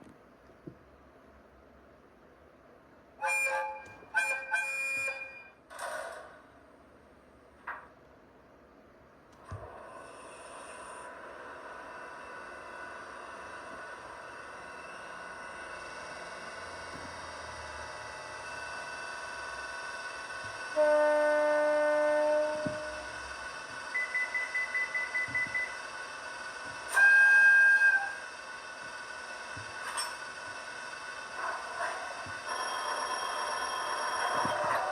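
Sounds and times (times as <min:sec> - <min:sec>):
steady electronic hiss: 0:10.0 - 0:34.9
model train horn blasts: 0:20.5 - 0:23.5, 0:26.8 - 0:28.4.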